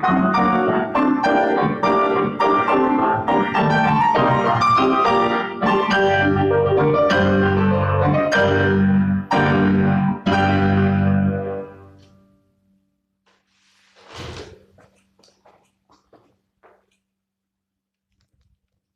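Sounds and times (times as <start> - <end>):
piano chords: 0.0 - 12.6.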